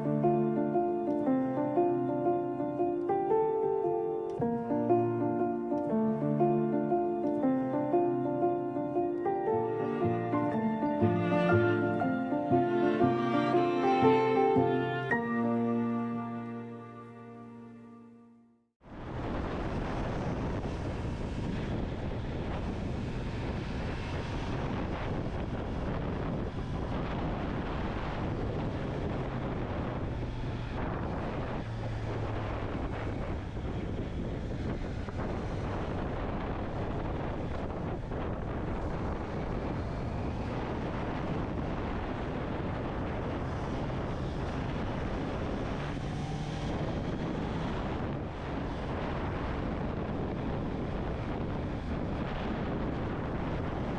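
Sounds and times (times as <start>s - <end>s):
wind noise on microphone: 18.8s - 53.9s.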